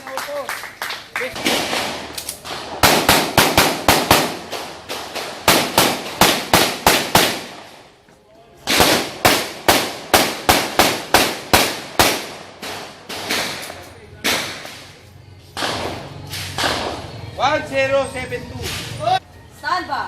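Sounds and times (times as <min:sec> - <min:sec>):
gunshots with echo: 0:01.4 - 0:07.7, 0:08.7 - 0:14.8, 0:15.6 - 0:17.1.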